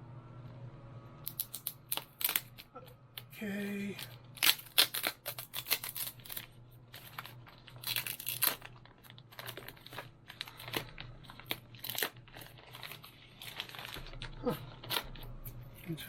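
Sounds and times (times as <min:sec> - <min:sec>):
packaging crinkling and tearing: 0:01.2 - 0:02.7, 0:03.6 - 0:15.8
packaging rustling: 0:04.0 - 0:15.8.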